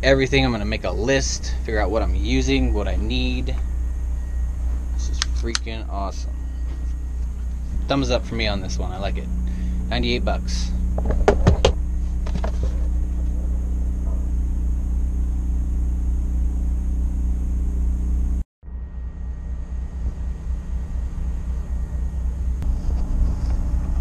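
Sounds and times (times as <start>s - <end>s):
low engine rumble: 0.0s - 24.0s
sharp clicks: 5.1s - 5.8s.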